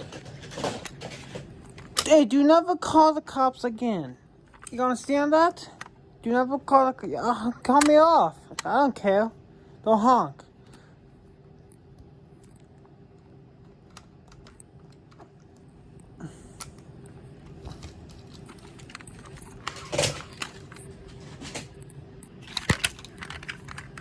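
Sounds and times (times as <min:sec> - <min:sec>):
faint steady hum: 0:00.0 - 0:24.0.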